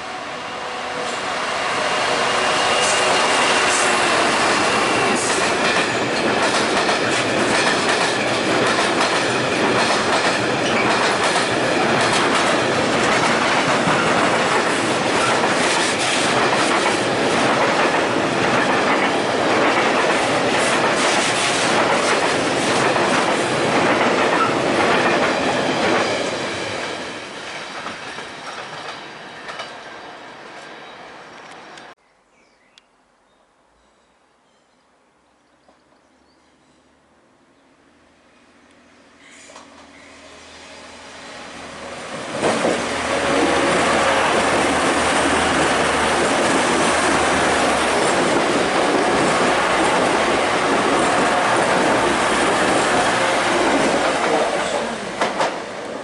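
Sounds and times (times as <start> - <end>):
train wheels clicking over rail joints: 2.8 - 29.8, 42.1 - 55.8.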